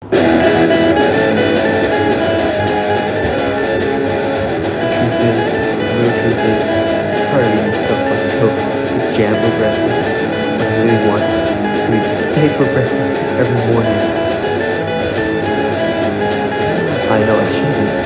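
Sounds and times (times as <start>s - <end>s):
guitar music with a regular beat: 0.0s - 18.0s.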